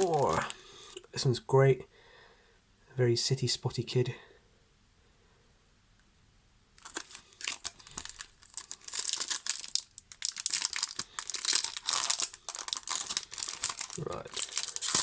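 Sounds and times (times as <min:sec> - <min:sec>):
foil packet crinkling: 0:00.0 - 0:00.6, 0:06.8 - 0:15.0.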